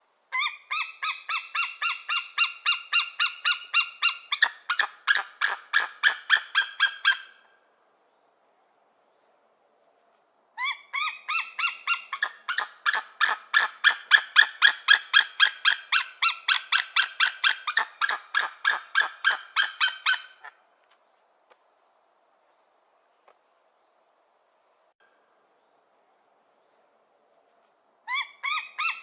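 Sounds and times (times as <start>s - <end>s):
eagle yelping chitter calls: 0.3s - 7.5s, 10.6s - 20.6s, 28.1s - 29.0s.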